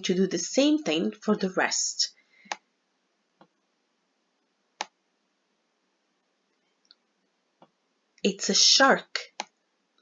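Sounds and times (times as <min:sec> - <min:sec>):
faint background hiss: 0:00.0 - 0:10.0
computer mouse clicks: 0:04.8 - 0:05.0, 0:09.3 - 0:09.6.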